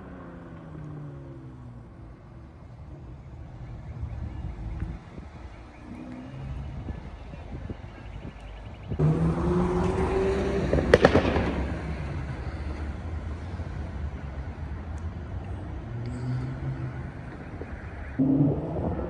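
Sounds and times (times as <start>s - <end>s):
car engine accelerating: 0.0s - 19.0s
exhaust pops and cracks: 10.7s - 12.3s.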